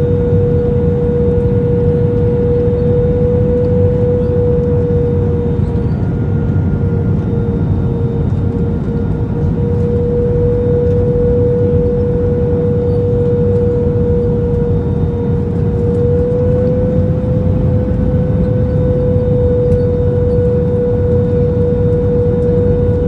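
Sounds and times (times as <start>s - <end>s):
constant humming tone: 0.0s - 23.0s
jet engine cabin roar: 0.0s - 23.0s.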